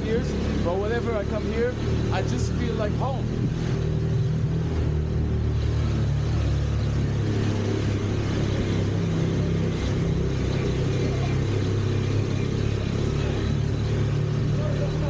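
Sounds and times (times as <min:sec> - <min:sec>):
low engine drone: 0:00.0 - 0:15.0.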